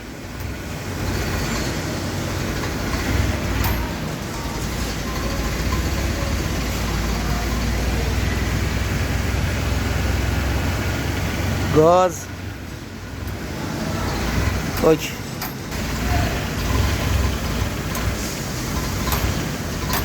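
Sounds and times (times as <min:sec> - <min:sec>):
car engine running: 0:00.0 - 0:20.0.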